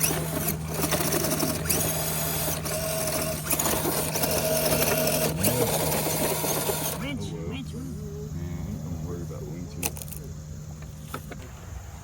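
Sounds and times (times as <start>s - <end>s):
small electric motor whining: 0.0s - 9.0s.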